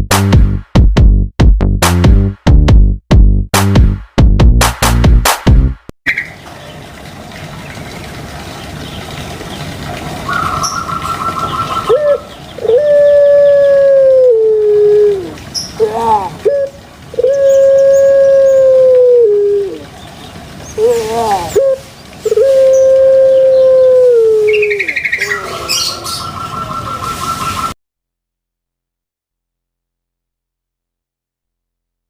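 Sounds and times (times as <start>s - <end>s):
electronic music: 3.6s - 5.8s
dove cooing: 10.2s - 27.8s.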